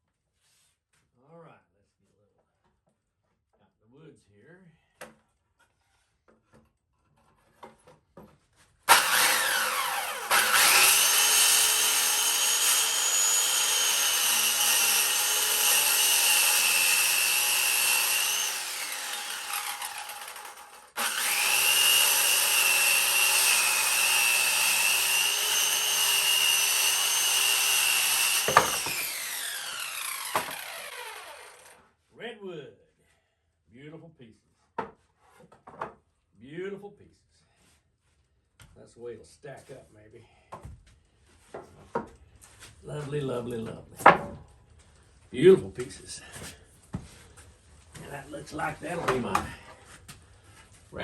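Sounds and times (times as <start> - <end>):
electric saw cutting wood: 8.9 - 31.9.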